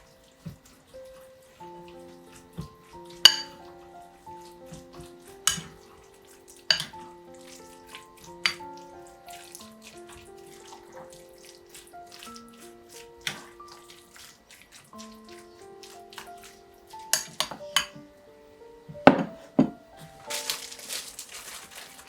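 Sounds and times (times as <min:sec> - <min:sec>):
soft background music: 0:00.0 - 0:22.0
dishes and utensils clinking: 0:02.3 - 0:11.2, 0:16.2 - 0:18.1, 0:19.0 - 0:22.0.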